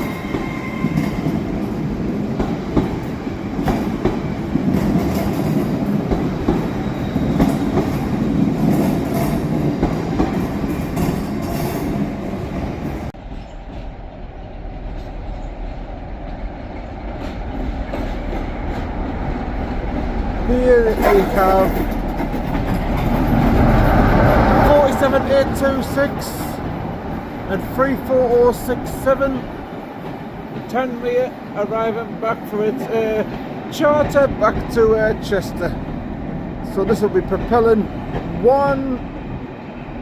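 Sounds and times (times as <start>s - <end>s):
train rumbling: 0.0s - 40.0s
wheels clicking over rail joints: 16.8s - 26.8s.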